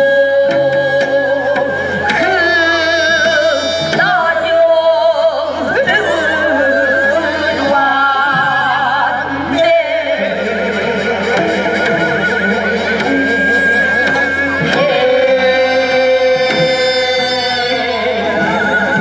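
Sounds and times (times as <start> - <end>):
traditional music with wavering melody: 0.0 - 19.0.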